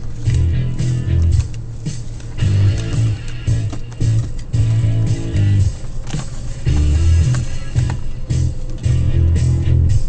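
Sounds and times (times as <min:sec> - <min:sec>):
deep bass line: 0:00.3 - 0:01.6, 0:02.4 - 0:05.8, 0:06.6 - 0:10.0
drum beat: 0:01.9 - 0:05.8.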